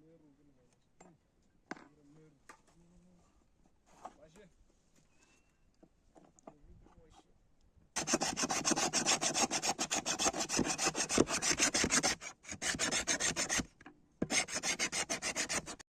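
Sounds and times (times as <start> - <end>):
rapid scraping strokes: 8.0 - 15.8.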